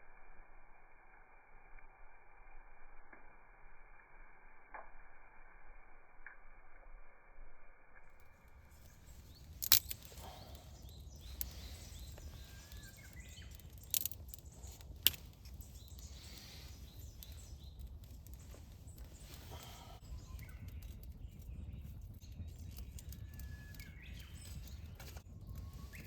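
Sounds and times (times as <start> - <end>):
faint high chirps: 7.8 - 26.0.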